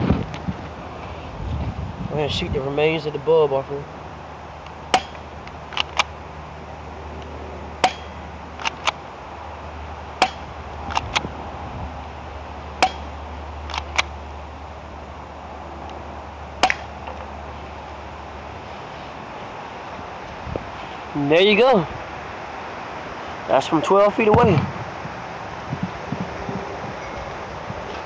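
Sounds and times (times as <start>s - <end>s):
wind noise: 0.0s - 14.2s, 15.6s - 28.0s
airsoft pistol shots: 4.9s - 5.2s, 7.8s - 8.8s, 10.2s - 10.5s, 12.8s - 13.1s, 16.6s - 16.9s.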